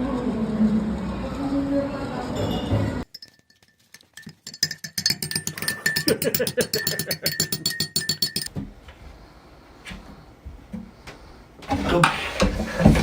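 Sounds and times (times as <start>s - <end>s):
percussive music: 3.1s - 8.5s.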